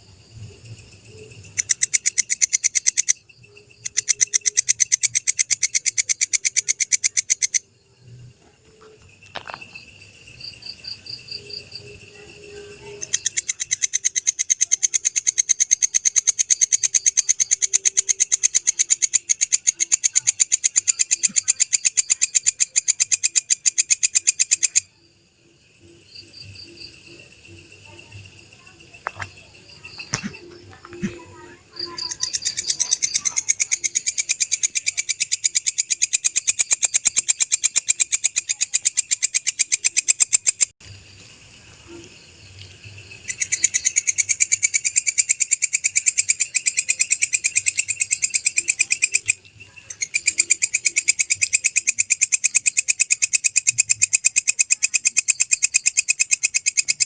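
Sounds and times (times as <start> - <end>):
katydid calling in rapid pulses: 0.5 - 7.8, 9.5 - 24.9, 26.1 - 40.7, 43.2 - 57.0
faint steady high tone: 7.5 - 13.5.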